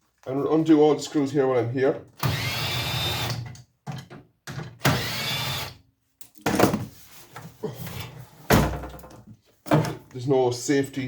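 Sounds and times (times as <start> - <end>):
power drill motor whining: 2.2 - 3.4, 4.8 - 5.8.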